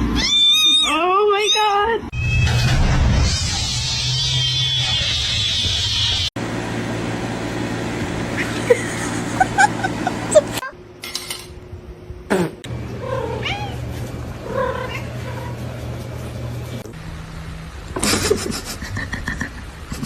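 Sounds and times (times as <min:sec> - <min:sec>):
cat meowing: 0:00.0 - 0:02.5, 0:13.0 - 0:13.8
steady low hum: 0:02.3 - 0:20.0.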